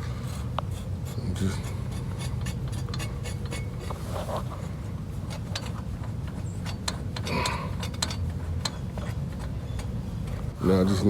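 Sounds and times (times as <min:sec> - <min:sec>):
steady low hum: 0:00.0 - 0:11.0
light clicks of metal tools: 0:05.3 - 0:10.5.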